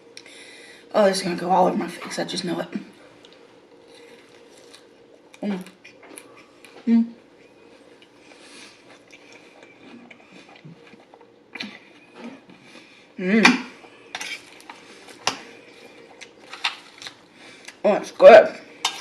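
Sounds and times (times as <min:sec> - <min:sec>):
person chewing salad: 0:03.2 - 0:13.0, 0:13.8 - 0:17.8.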